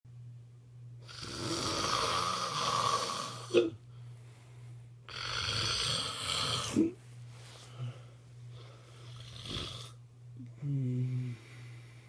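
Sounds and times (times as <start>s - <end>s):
person snoring: 1.0s - 3.7s, 5.1s - 7.0s, 7.8s - 11.8s.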